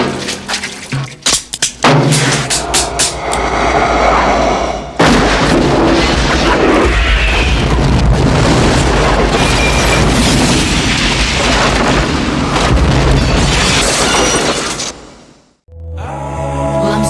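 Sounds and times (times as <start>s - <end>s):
explosions: 3.6s - 15.3s.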